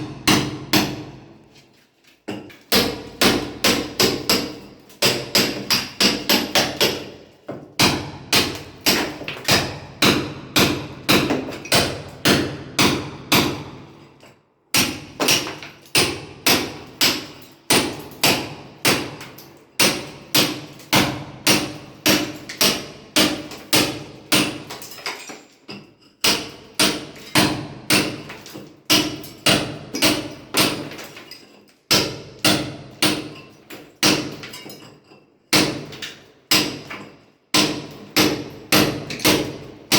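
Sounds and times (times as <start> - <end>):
hammer blows on masonry: 0.0 - 1.3.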